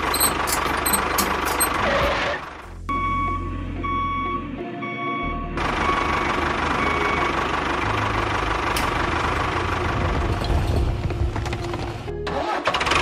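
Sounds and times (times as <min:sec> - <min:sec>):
reversing beeper: 0:01.8 - 0:07.4.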